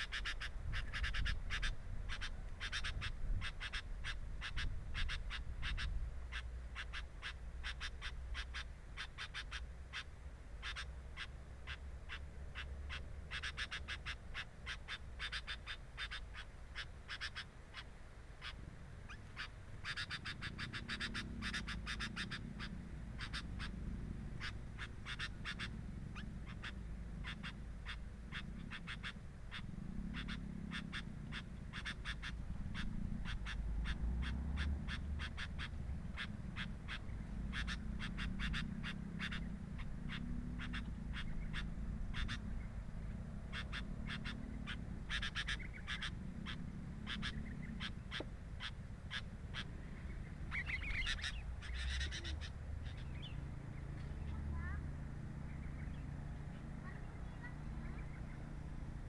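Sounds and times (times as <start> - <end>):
low wavering hum: 21.0 - 59.0.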